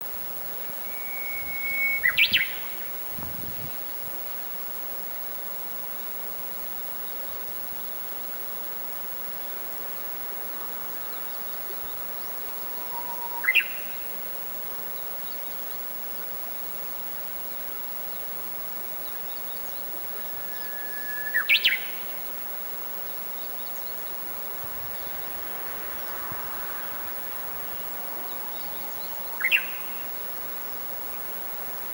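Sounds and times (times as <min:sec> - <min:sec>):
steady background hiss: 0:00.0 - 0:31.9
faint high chirps: 0:00.6 - 0:03.8, 0:11.1 - 0:14.4, 0:19.0 - 0:31.6
bird singing whistled song: 0:00.8 - 0:02.9, 0:12.8 - 0:14.1, 0:20.2 - 0:22.2, 0:27.7 - 0:30.2.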